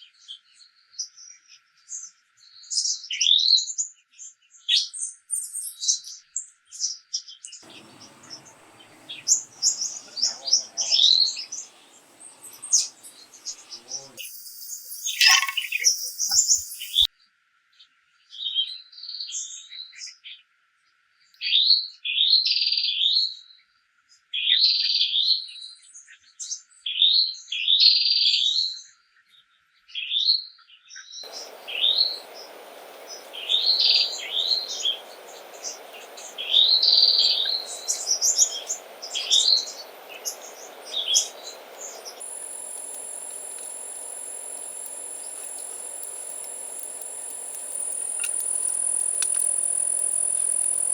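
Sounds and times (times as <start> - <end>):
high insect trill: 7.6 - 17.1, 31.3 - 50.9
songbird chirping: 7.6 - 17.1, 31.2 - 50.9
steady forest hiss: 7.6 - 17.1, 31.2 - 50.9.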